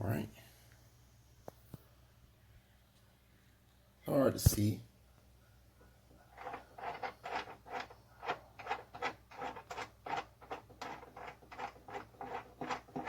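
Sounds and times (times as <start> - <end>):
hand tool scraping wood: 6.3 - 13.0.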